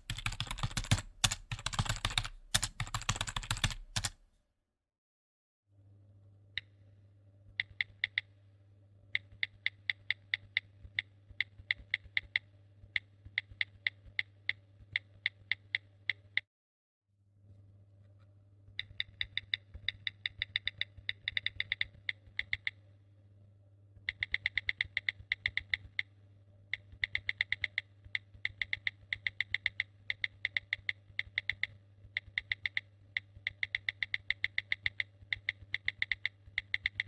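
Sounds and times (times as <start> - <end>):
faint low hum: 17.2 - 37.0.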